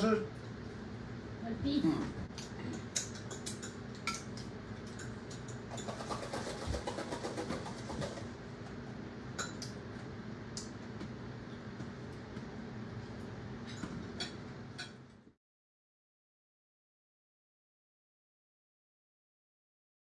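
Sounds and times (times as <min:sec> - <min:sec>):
low background hum: 0:00.0 - 0:15.4
dishes and utensils clinking: 0:02.6 - 0:07.1, 0:09.4 - 0:09.8, 0:13.7 - 0:15.1.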